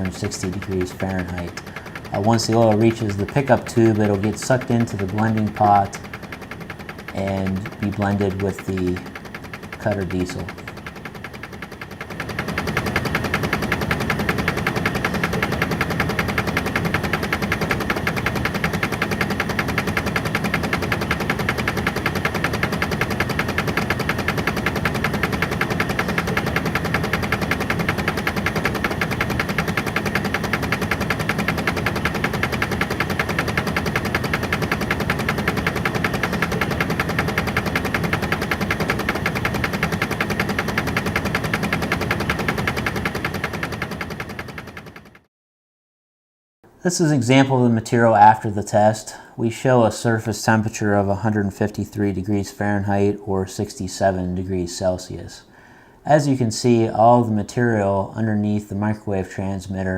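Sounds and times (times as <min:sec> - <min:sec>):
machine with rapid pulsing beat: 0:00.0 - 0:45.3.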